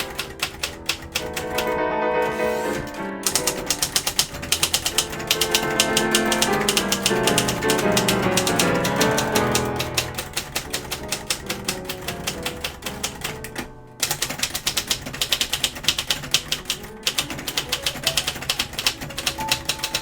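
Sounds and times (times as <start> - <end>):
typewriter key strikes: 0.0 - 20.0.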